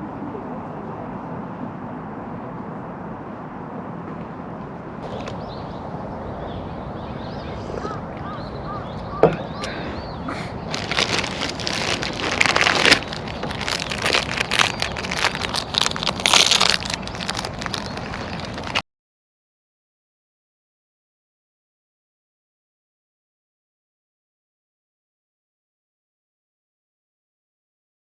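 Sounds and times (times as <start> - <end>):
crackling and rustling: 5.0 - 5.5, 9.3 - 18.8.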